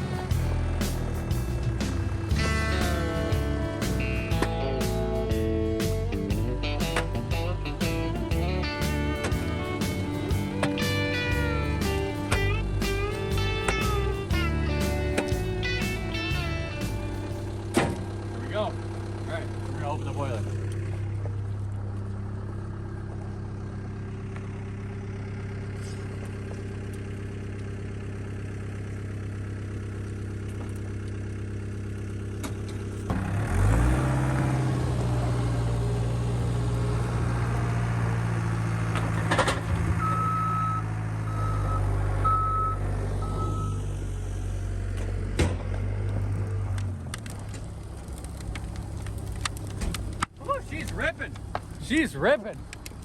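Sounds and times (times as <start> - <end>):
diesel engine idling and revving: 0.0 - 53.0
reverse alarm beeps: 40.0 - 43.8.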